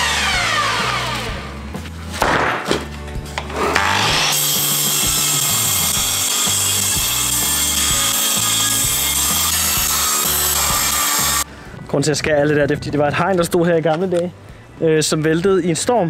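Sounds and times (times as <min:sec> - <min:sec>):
power saw cutting wood: 0:00.0 - 0:01.6, 0:03.4 - 0:11.5
background music with bass line: 0:00.0 - 0:16.0.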